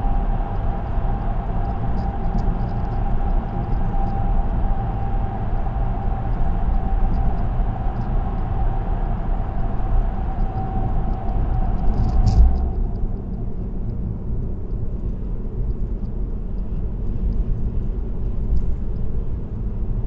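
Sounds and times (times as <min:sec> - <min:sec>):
tyre and road noise: 0:00.0 - 0:14.5
steady hum: 0:00.0 - 0:20.0.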